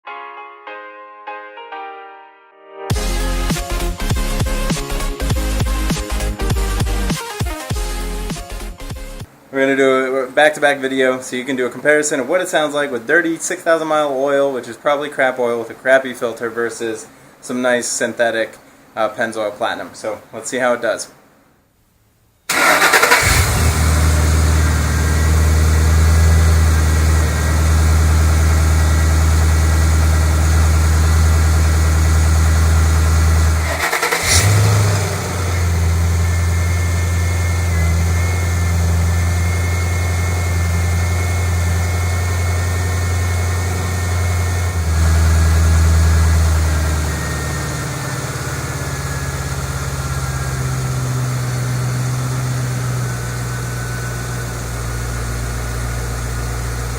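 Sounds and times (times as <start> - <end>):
car engine starting and idling: 22.5 - 56.9.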